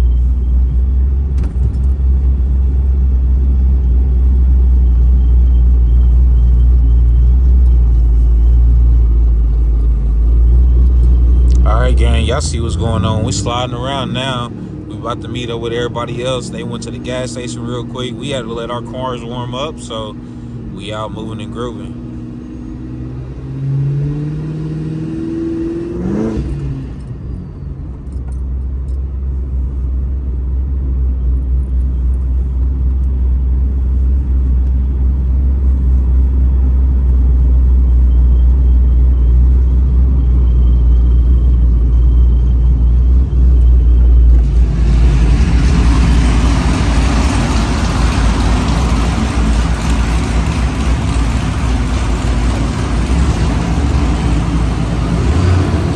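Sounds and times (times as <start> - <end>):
car engine and exhaust driving: 0.0 - 55.9
loud rushing noise: 44.3 - 55.9.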